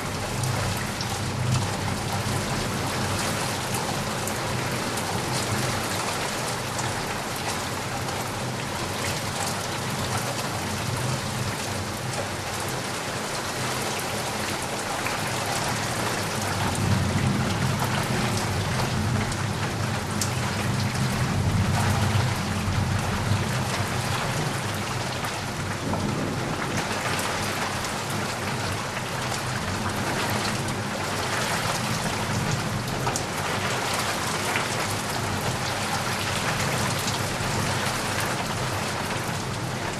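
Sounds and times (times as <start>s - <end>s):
steady rain tapping on surface: 0.0s - 39.9s
low rumble of thunder: 15.6s - 34.1s.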